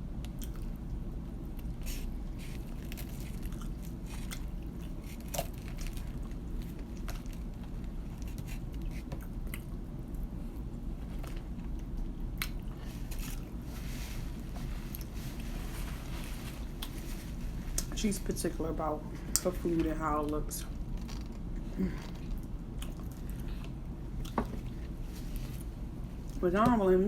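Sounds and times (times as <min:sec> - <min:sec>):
steady low hum: 0:00.0 - 0:27.0
chewing and biting: 0:00.2 - 0:13.5, 0:22.1 - 0:25.5
food crunches: 0:01.5 - 0:10.3.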